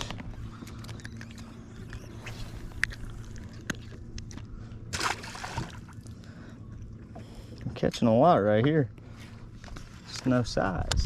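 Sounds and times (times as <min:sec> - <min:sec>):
small clicks and scrapes: 0:00.0 - 0:04.5
steady low hum: 0:00.0 - 0:11.0.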